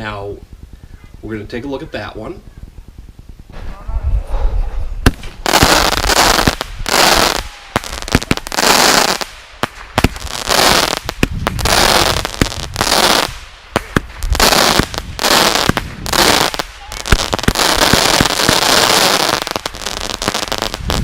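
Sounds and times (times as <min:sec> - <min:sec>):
firework bangs with crackling hiss: 0:05.0 - 0:21.0.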